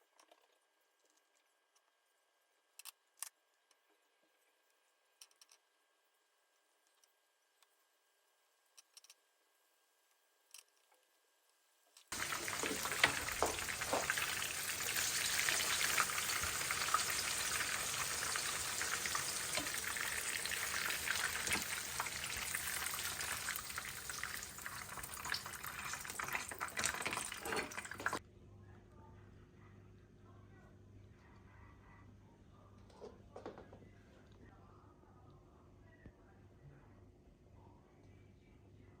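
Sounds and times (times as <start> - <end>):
food frying in hot oil: 12.1 - 28.2.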